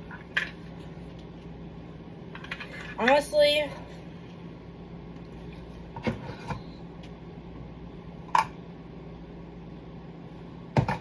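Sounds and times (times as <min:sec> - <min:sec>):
faint steady hum: 0:00.0 - 0:11.0
kitchen items knocking and clicking: 0:10.7 - 0:11.0.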